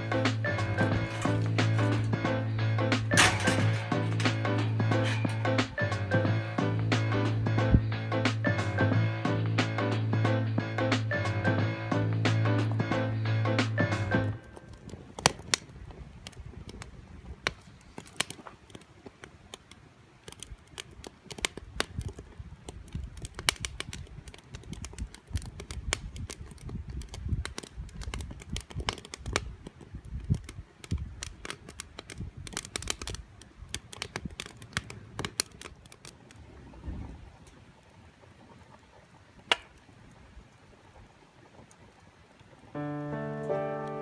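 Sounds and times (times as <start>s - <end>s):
sharp clicks and light knocks: 0.0s - 2.3s, 2.9s - 6.4s, 39.5s - 39.8s
low rumble of handling: 0.0s - 8.0s.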